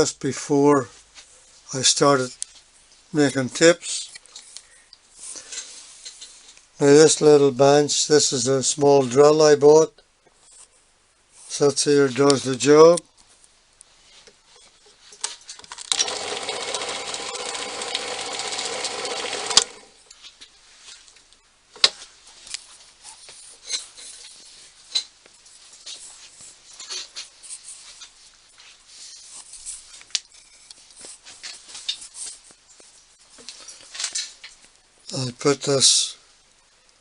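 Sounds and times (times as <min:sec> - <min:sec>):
bench drill motor running: 0:15.9 - 0:20.0.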